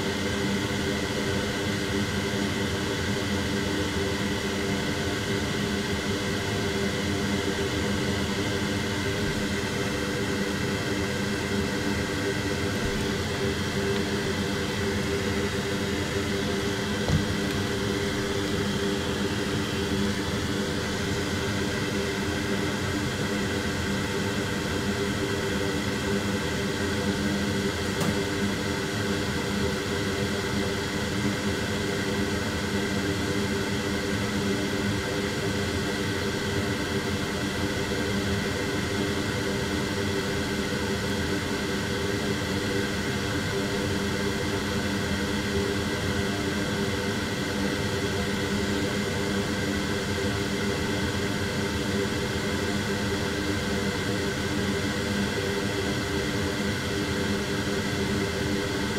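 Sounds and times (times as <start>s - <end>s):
fan whirring: 7.5s - 22.1s, 26.4s - 29.5s.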